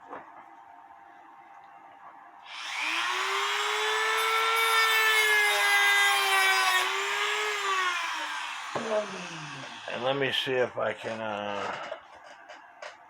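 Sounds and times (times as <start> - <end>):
electric grinder whining: 2.5 - 10.4.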